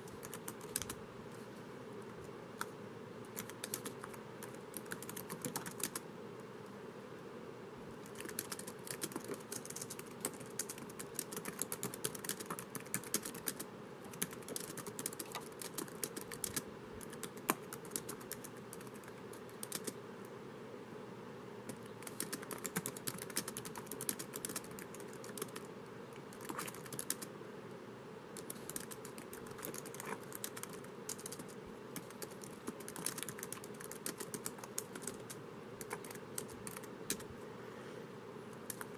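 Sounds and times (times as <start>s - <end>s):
typing on a laptop keyboard: 0.0s - 1.0s, 3.3s - 6.0s, 8.0s - 20.0s, 21.7s - 25.7s, 26.3s - 27.3s, 28.4s - 37.3s, 38.6s - 38.9s.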